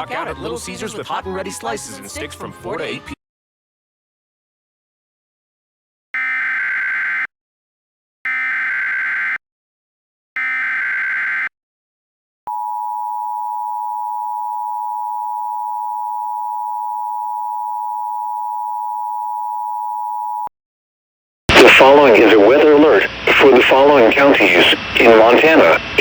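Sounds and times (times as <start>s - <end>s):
steady two-tone attention signal: 12.5s - 20.5s.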